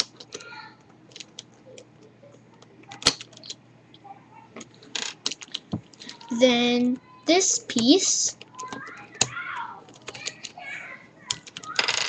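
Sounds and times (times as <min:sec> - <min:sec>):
plastic puzzle pieces clicking: 0:00.0 - 0:00.5, 0:01.1 - 0:01.9, 0:02.6 - 0:03.6, 0:04.6 - 0:07.0, 0:07.8 - 0:10.6, 0:11.3 - 0:12.0.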